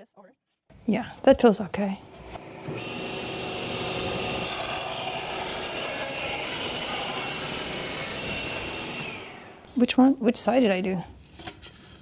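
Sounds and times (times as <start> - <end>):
table saw cutting wood: 2.1 - 9.7.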